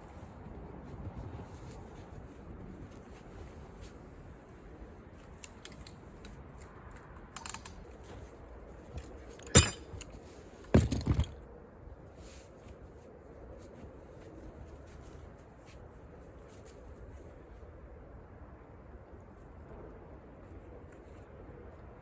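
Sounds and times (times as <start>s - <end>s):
metal rigging hardware clanking: 9.3s - 11.4s.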